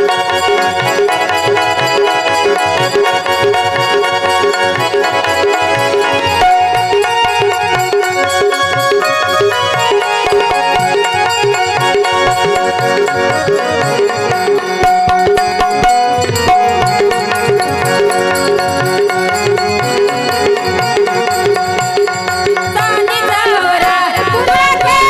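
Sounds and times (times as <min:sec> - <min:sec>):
sustained melodic instrument: 0:00.0 - 0:25.0
tabla strokes: 0:00.0 - 0:25.0
person singing: 0:22.8 - 0:25.0.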